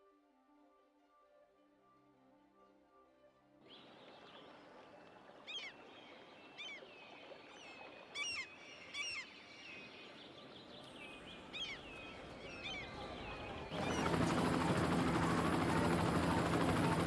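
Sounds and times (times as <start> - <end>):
birds chirping: 8.2 - 17.0.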